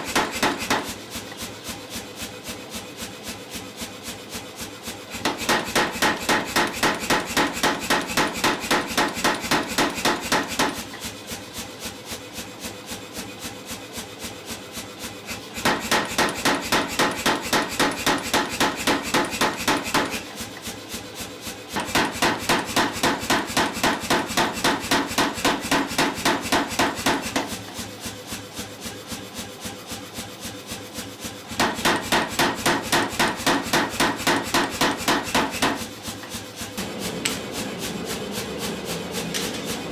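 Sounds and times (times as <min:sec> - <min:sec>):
power hammer striking steel: 0:00.0 - 0:01.1, 0:05.1 - 0:11.0, 0:15.3 - 0:20.5, 0:21.8 - 0:27.7, 0:31.5 - 0:36.0, 0:36.8 - 0:38.5, 0:39.2 - 0:39.9.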